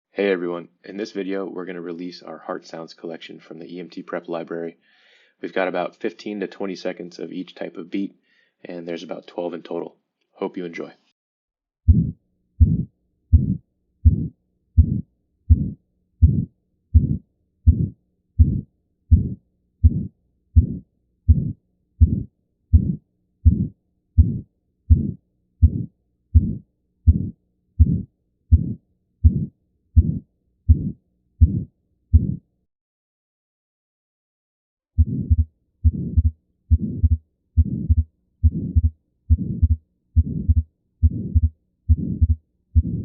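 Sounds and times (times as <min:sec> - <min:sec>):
heartbeat thumps: 0:11.9 - 0:32.5, 0:35.0 - 0:43.0.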